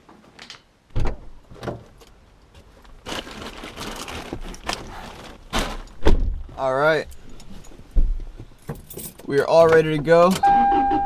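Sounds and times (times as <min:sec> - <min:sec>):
rustling handling noise: 0:01.5 - 0:09.9.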